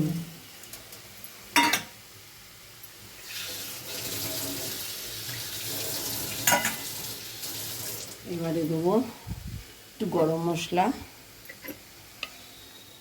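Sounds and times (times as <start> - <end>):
food frying in pan: 0.0 - 8.3.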